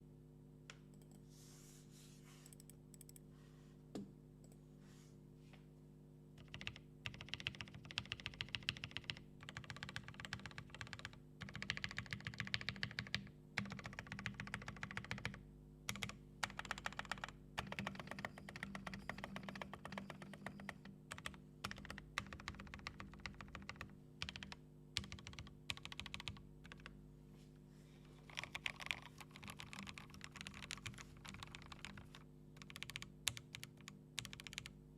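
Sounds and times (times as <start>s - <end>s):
mechanical keyboard typing clacks: 6.4s - 26.9s, 28.3s - 34.7s.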